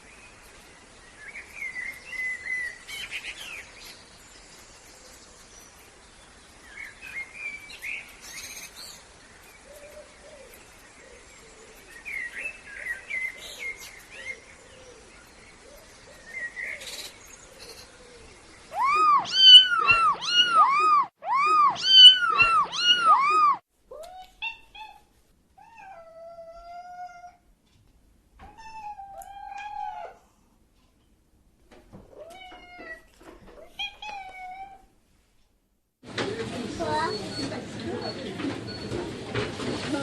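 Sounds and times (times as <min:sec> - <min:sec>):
faint bird chirps: 0:00.2 - 0:23.6
cat meowing: 0:18.7 - 0:25.0, 0:28.4 - 0:30.2.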